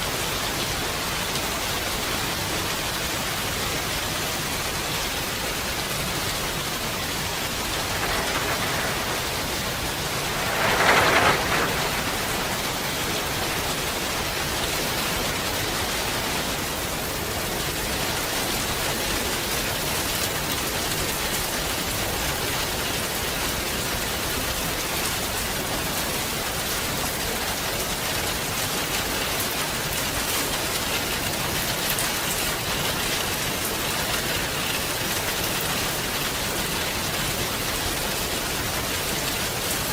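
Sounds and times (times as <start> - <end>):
steady rain falling: 0.0 - 39.9
separate raindrops: 6.7 - 16.3.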